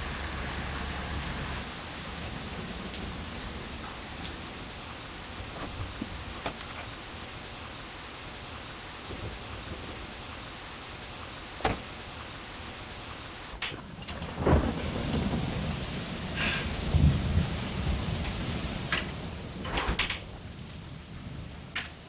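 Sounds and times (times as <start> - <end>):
steady rain falling: 0.0 - 22.0.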